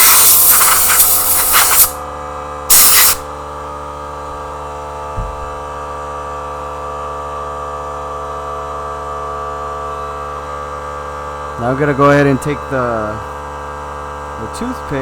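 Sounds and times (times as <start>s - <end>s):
compressed air hissing: 0.0s - 2.0s, 2.7s - 3.3s
steady hum: 0.0s - 2.0s, 4.2s - 6.0s
small knock: 5.1s - 5.8s.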